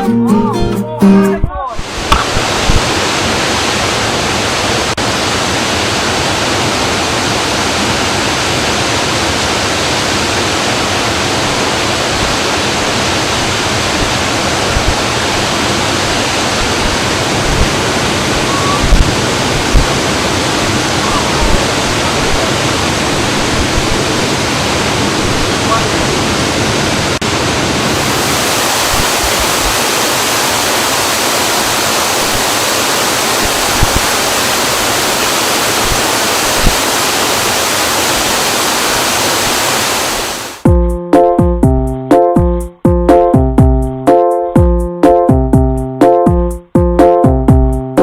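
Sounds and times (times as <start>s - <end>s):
small waterfall rushing: 1.8s - 40.6s
low thumps: 14.0s - 15.1s, 16.6s - 20.2s, 21.0s - 24.2s, 40.6s - 44.0s, 44.6s - 47.9s.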